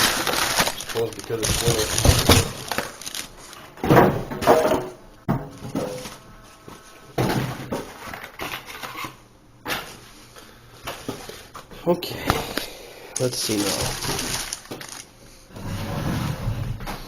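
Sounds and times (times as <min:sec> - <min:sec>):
packaging rustling: 0:00.0 - 0:03.8, 0:13.2 - 0:15.2
knocks and scrapes of boxed machine: 0:00.6 - 0:02.8.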